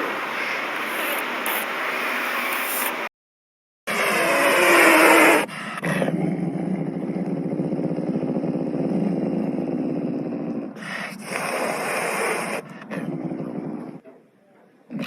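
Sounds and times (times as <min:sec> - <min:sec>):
wild cat harsh call: 0:03.9 - 0:06.1
wild cat rumbling: 0:03.9 - 0:14.0.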